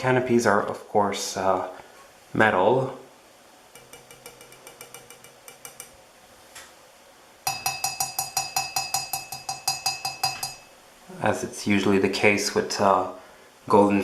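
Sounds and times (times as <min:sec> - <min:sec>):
rapid tapping on sheet metal: 0:03.8 - 0:06.0, 0:07.5 - 0:10.7.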